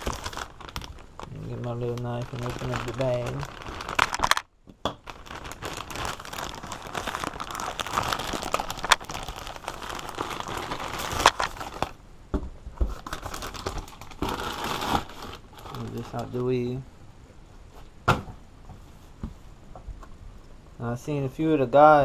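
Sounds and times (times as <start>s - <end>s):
plastic bag crinkling: 0.0s - 12.0s, 12.9s - 16.5s.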